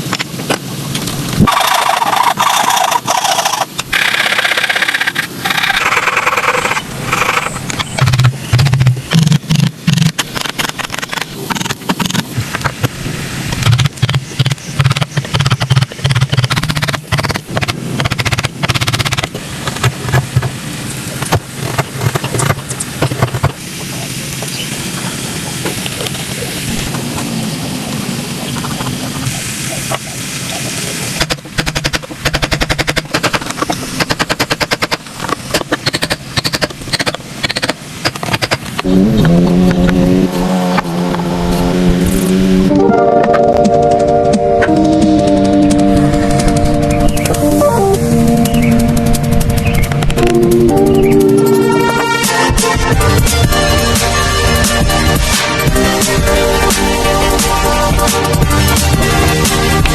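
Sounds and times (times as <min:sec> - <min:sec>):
sharp knocks and clicks on wood: 0:21.2 - 0:23.6, 0:31.2 - 0:38.8.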